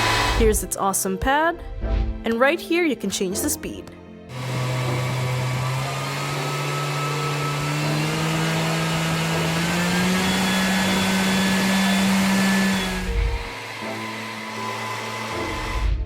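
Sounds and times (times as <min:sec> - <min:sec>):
orbital sander motor rising pitch: 0:00.0 - 0:00.5, 0:04.3 - 0:16.0.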